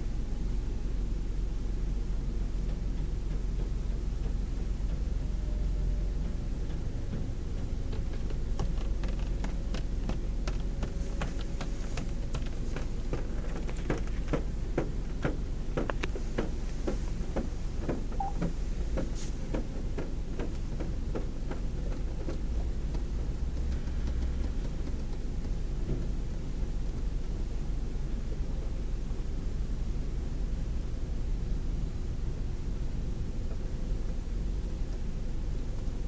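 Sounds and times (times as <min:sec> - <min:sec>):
car wash machine rumbling: 0:00.0 - 0:36.0
irregular clicks and taps: 0:06.7 - 0:26.1.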